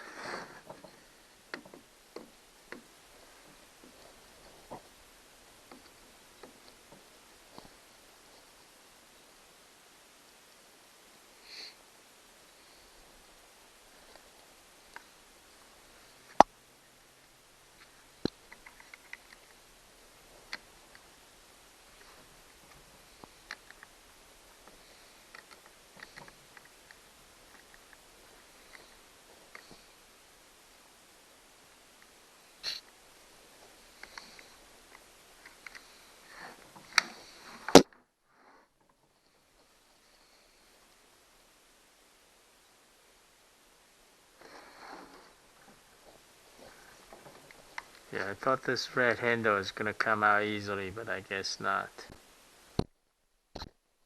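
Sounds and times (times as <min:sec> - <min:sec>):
person sniffing: 0:00.0 - 0:00.6, 0:32.6 - 0:32.8
small ticks: 0:17.8 - 0:19.6, 0:22.0 - 0:30.1, 0:33.6 - 0:37.4, 0:46.0 - 0:48.3
chainsaw parts clicking: 0:18.2 - 0:19.6.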